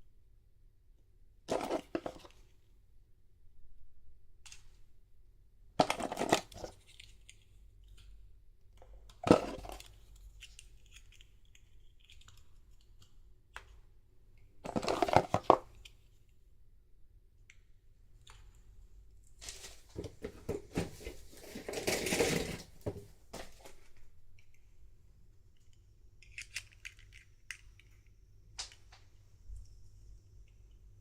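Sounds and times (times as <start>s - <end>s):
plastic packaging crinkling: 19.4s - 23.8s.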